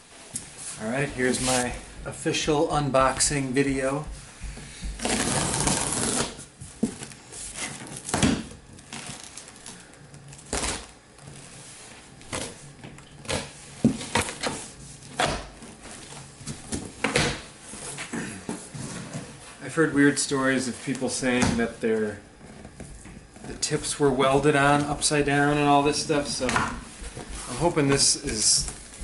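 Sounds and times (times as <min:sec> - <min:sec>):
knocks and rustles of cardboard: 0:00.5 - 0:09.7, 0:22.4 - 0:29.0
cardboard tearing: 0:05.0 - 0:06.5.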